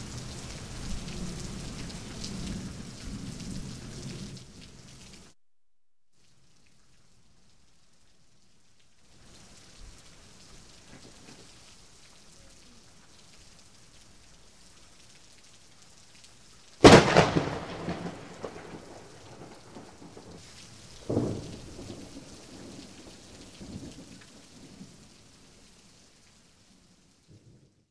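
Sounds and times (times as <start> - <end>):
steady rain: 0.0 - 5.4, 6.2 - 27.9
thunder rumbling: 16.8 - 20.4, 21.0 - 24.1.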